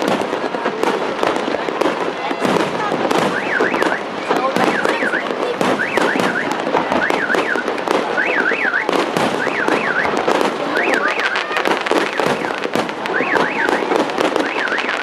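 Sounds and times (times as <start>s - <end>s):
fireworks bangs and crackles: 0.0s - 15.0s
car alarm warbling siren: 3.3s - 15.0s.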